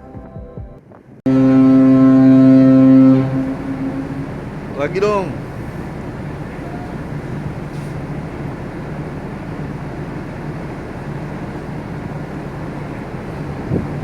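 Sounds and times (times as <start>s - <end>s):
low drone of ship: 0.8s - 14.0s
wind on microphone: 13.2s - 14.0s.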